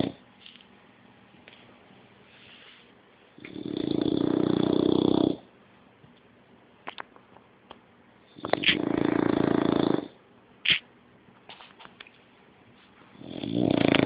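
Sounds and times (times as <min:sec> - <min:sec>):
puppy snoring: 0:00.0 - 0:00.2, 0:03.4 - 0:05.5, 0:08.3 - 0:10.8, 0:13.1 - 0:14.0.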